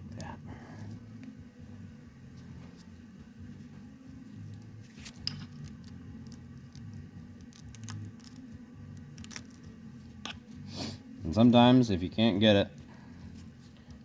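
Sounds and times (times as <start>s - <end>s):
steady low hum: 0.0s - 14.0s
metallic clicks and scratching: 4.5s - 9.7s.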